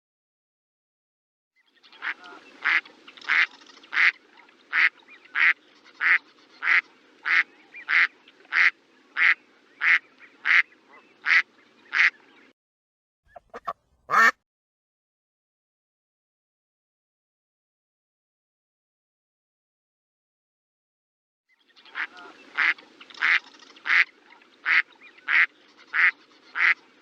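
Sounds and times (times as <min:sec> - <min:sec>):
duck quacking: 0:02.0 - 0:12.2, 0:13.3 - 0:14.4, 0:22.0 - 0:26.8.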